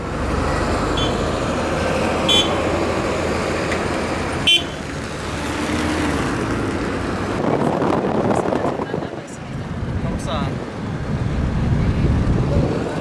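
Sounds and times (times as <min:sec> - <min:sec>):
vehicle rumble: 0:00.0 - 0:13.0
short horn toots: 0:02.3 - 0:02.6.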